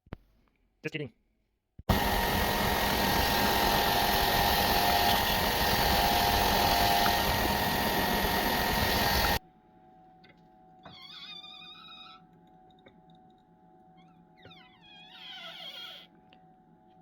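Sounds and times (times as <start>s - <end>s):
power grinder whining on metal: 1.9s - 9.4s.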